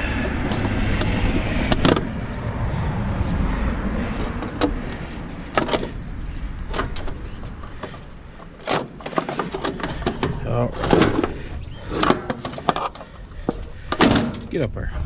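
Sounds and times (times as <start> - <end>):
vehicle engine rumble: 0.0 - 15.0
sharp clicks and knocks: 0.2 - 2.1, 4.2 - 6.0, 6.6 - 14.6.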